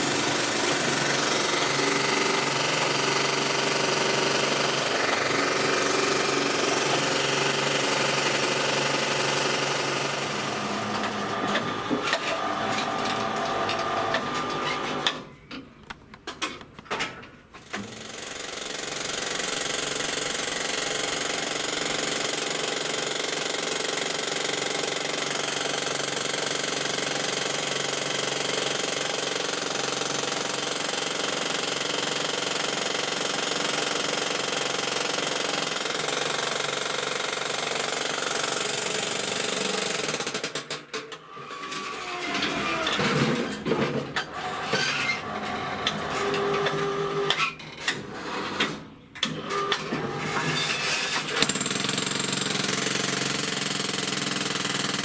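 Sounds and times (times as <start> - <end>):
jackhammer hammering: 0.0 - 15.1, 17.6 - 40.8, 51.1 - 55.0.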